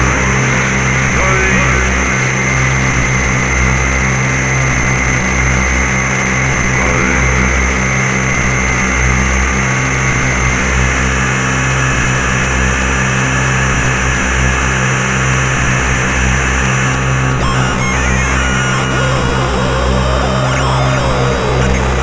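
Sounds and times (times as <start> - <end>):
dense low synthesizer drone: 0.0 - 22.0
high held synth tones: 16.3 - 22.0.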